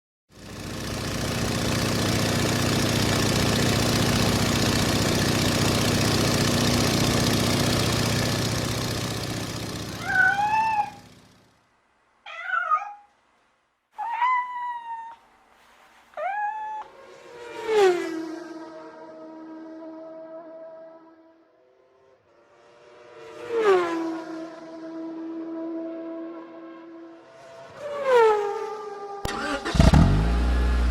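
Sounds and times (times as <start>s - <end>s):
short rising animal calls: 10.0s - 11.1s, 12.3s - 13.1s, 14.0s - 17.0s.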